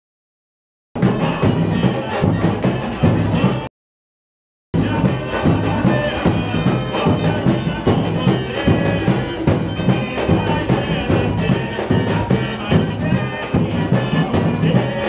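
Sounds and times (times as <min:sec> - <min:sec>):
samba drum section playing: 0:01.0 - 0:03.7, 0:04.8 - 0:15.0.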